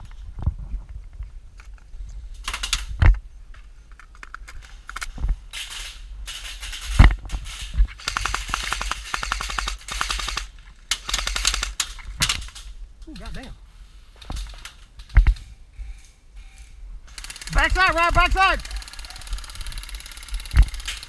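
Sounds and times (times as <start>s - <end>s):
airsoft guns firing bursts: 8.0s - 11.8s, 17.1s - 21.0s.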